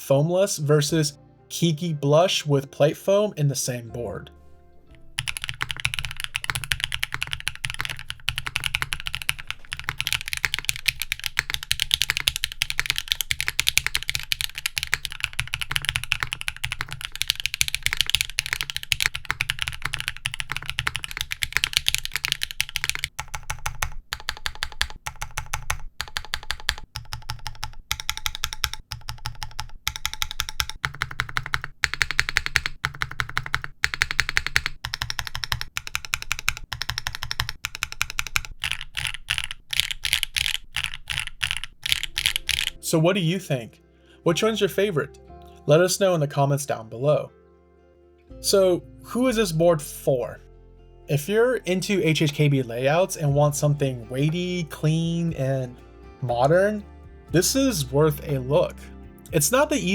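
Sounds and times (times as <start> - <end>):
mechanical keyboard typing: 5.1 - 42.8.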